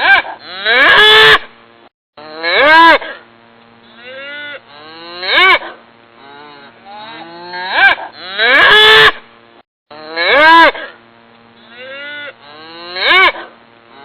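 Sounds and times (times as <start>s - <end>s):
cattle mooing: 3.9s - 9.1s.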